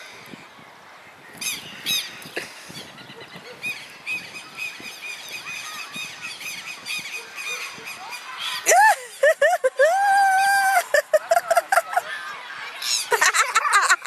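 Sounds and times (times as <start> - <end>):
birds shrill calls: 1.2 - 9.2.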